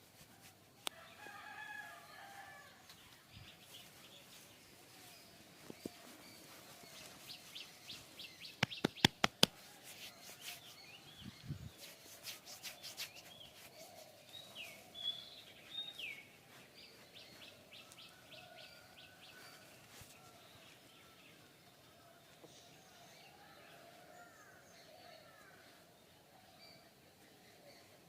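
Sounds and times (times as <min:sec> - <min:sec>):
small birds chirping: 0:00.0 - 0:28.0
sharp smacks: 0:08.5 - 0:09.6.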